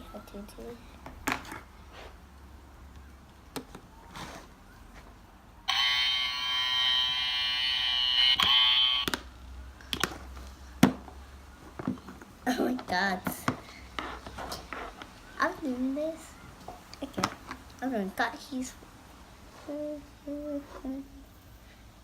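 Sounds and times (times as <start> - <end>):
toy clippers buzzing: 5.7 - 9.2.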